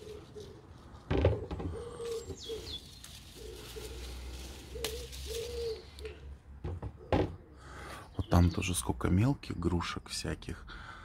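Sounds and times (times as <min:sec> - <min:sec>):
dove cooing: 0:00.0 - 0:07.8.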